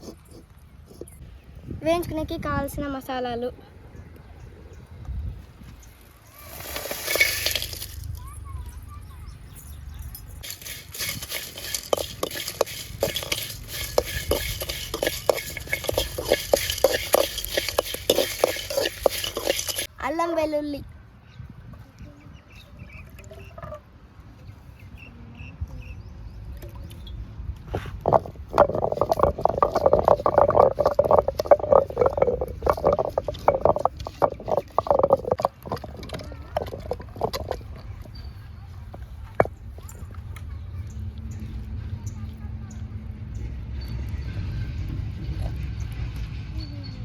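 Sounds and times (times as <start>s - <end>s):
food sizzling: 10.4s - 19.9s
metal spoon scraping a pan: 10.4s - 19.9s, 28.0s - 37.8s
rapid knocking of pounding ginger and garlic: 10.4s - 19.9s.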